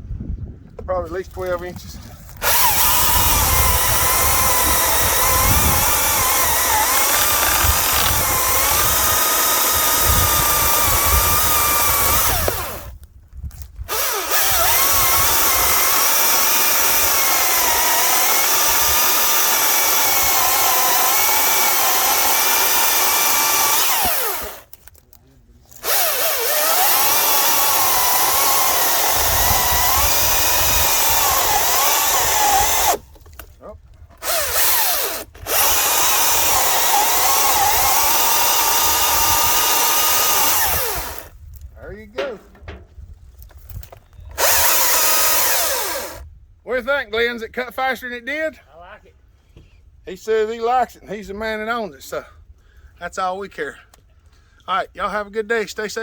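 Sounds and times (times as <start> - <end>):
electric chainsaw cutting log: 2.4 - 13.0, 13.9 - 24.8, 25.8 - 33.1, 34.2 - 41.3, 44.4 - 46.2.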